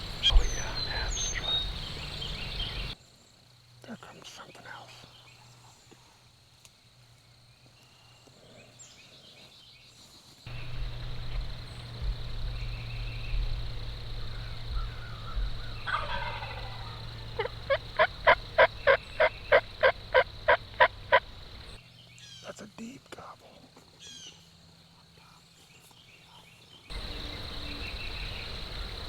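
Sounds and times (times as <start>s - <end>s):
low rumble: 10.5s - 18.8s
turkey calling notes: 10.5s - 21.6s
turkey gobbling: 14.2s - 21.5s.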